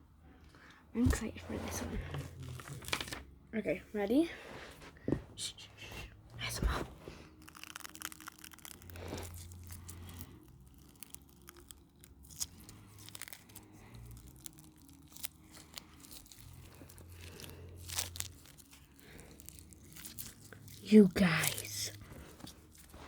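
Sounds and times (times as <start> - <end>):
stress ball coating crackling: 5.0 - 23.0.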